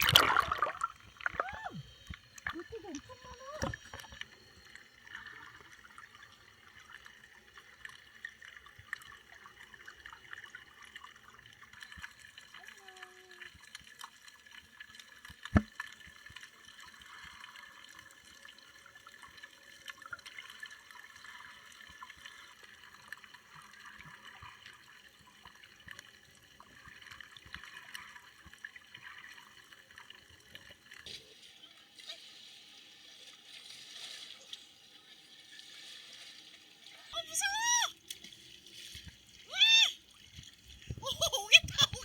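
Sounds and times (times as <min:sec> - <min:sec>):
small crackles and ticks: 0:02.0 - 0:32.2.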